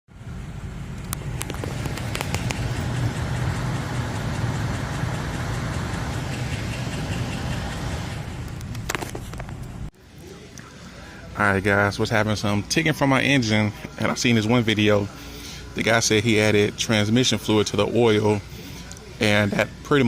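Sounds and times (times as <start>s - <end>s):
car engine idling: 0.1s - 20.0s
sharp clicks: 1.0s - 4.4s.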